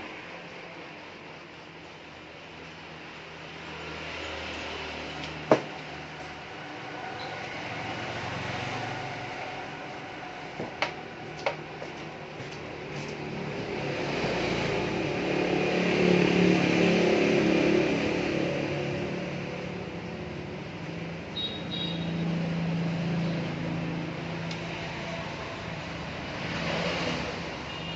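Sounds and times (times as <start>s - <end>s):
vehicle engine passing by: 3.7s - 10.4s, 12.8s - 27.7s.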